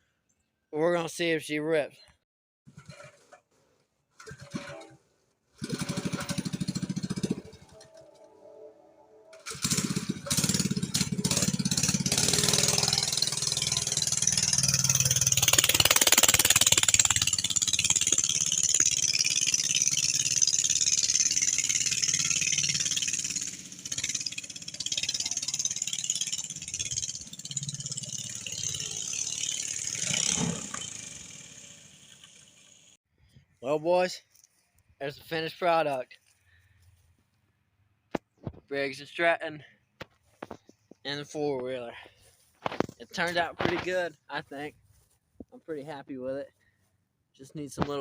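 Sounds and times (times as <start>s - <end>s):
quad rattling: 5.6s - 8.6s, 9.3s - 32.9s
small engine running under throttle: 5.6s - 8.6s, 9.3s - 33.0s.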